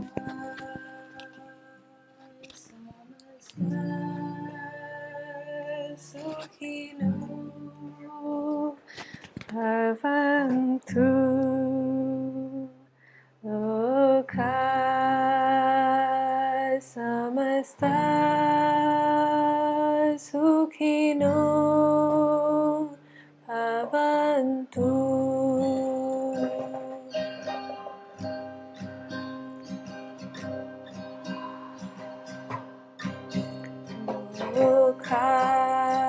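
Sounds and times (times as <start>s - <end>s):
woman singing long held notes: 0.0s - 8.9s, 9.5s - 12.8s, 13.4s - 27.4s, 33.6s - 36.0s.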